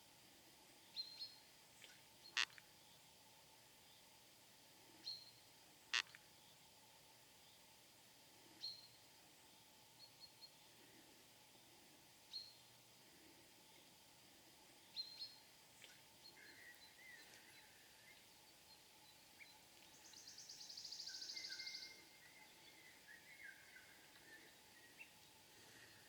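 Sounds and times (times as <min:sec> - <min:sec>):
birds chirping: 0:14.8 - 0:26.0.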